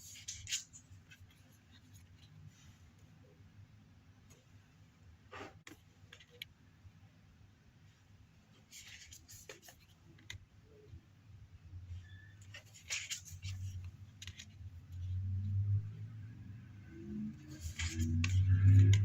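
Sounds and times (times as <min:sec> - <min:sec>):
cards swishing and tapping: 0:17.4 - 0:19.0.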